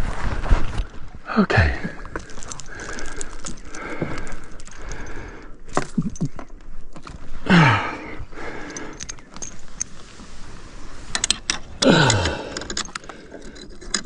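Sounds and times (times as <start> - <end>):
objects knocking and rattling: 2.0 - 5.1
man grunting: 7.5 - 8.0, 11.8 - 12.5.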